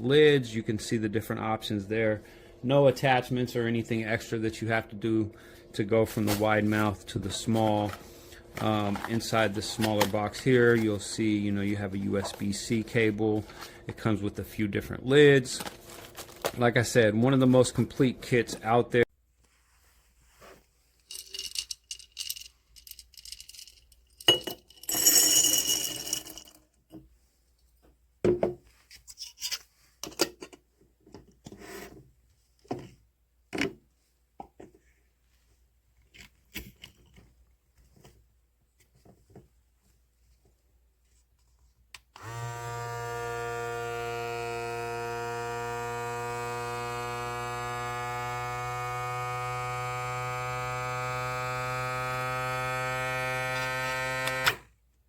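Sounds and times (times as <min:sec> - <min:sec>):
rustling: 0:19.3 - 0:24.8
vacuum sealer pump humming: 0:42.2 - 0:54.6.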